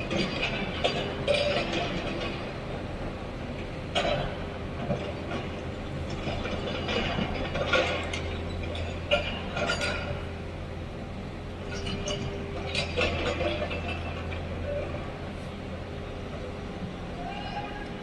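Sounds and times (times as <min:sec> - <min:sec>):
excavator diesel engine humming: 0:00.0 - 0:18.0.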